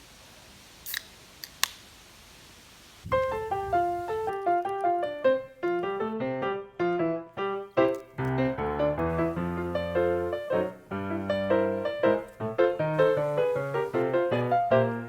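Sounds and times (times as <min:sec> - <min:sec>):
faint hiss: 0:00.0 - 0:15.0
sharp clicks: 0:00.9 - 0:01.8, 0:07.8 - 0:08.6
piano music: 0:03.1 - 0:15.0.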